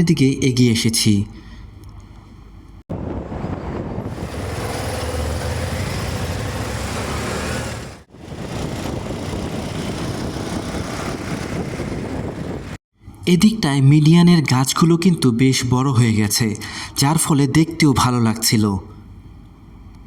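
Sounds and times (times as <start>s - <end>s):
vehicle engine and road rumble: 2.5s - 12.8s.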